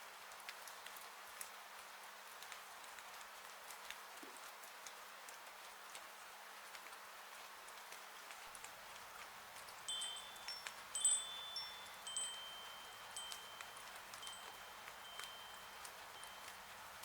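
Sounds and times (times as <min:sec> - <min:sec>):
rain on a porch roof: 0:00.0 - 0:17.0
chimes ringing: 0:09.9 - 0:16.8.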